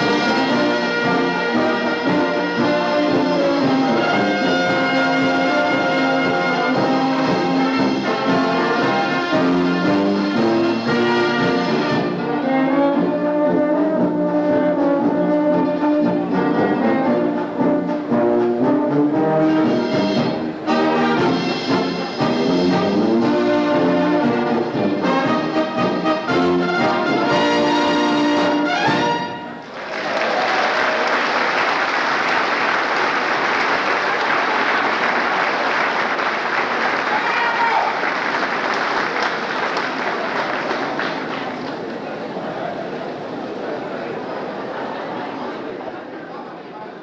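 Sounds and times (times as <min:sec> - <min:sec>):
brass band playing: 0:00.0 - 0:29.8
audience applauding: 0:29.5 - 0:42.7.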